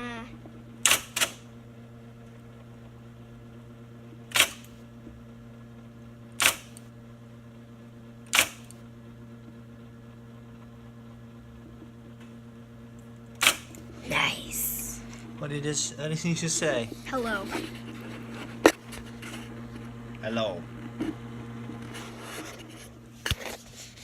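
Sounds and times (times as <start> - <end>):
typewriter motor humming: 0.8 - 1.5, 4.2 - 4.8, 6.3 - 6.9, 8.2 - 8.8, 13.0 - 18.2
typewriter key strikes: 4.3 - 4.7, 6.4 - 6.8.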